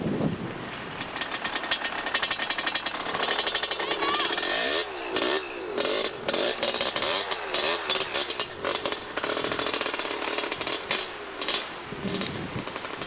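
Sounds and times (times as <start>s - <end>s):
small engine revving roughly: 1.6s - 13.0s.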